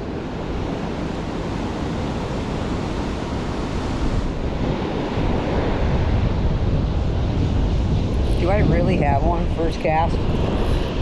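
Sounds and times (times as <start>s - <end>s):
rushing spillway water: 0.0s - 11.0s
wind buffeting microphone: 0.0s - 11.0s.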